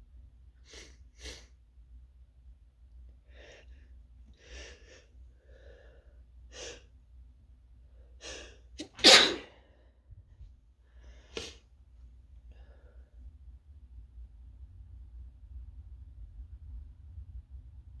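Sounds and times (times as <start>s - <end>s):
person sneezing: 8.8s - 9.6s.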